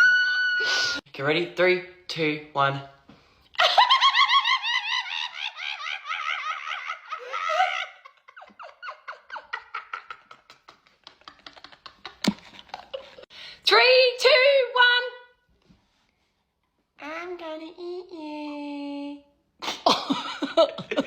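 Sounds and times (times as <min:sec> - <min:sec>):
person giggling: 0:03.6 - 0:13.2, 0:19.6 - 0:21.0.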